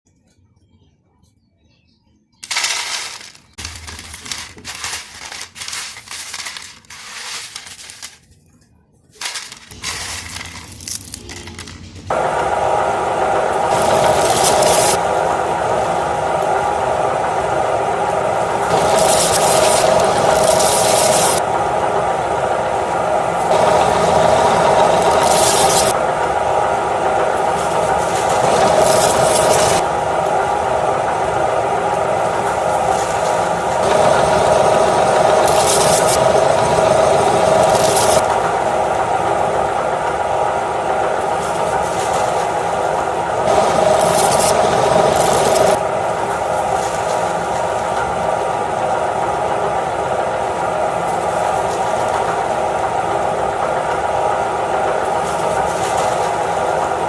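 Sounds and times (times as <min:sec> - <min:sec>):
chips crunching in grinder: 0:02.4 - 0:08.2
electric meat grinder running: 0:12.1 - 0:48.1.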